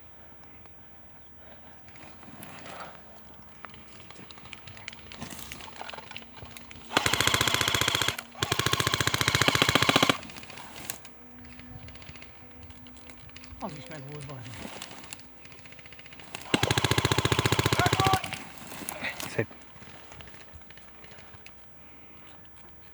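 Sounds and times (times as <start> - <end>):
faint rustling: 0.2 - 22.9
gearbox whirr: 3.0 - 21.9
airsoft gun firing bursts: 5.0 - 12.4, 14.4 - 21.3.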